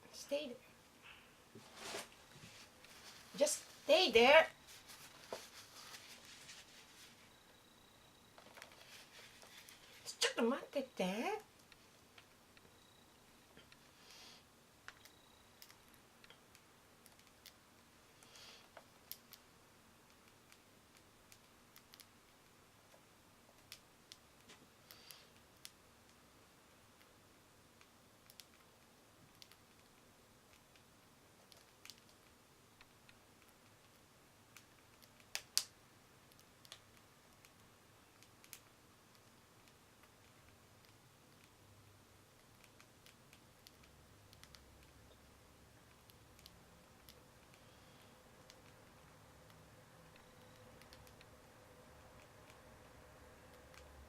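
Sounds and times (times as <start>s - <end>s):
soft rustles: 1.5s - 7.3s, 8.4s - 10.2s
beaks pecking and tapping: 14.8s - 54.0s.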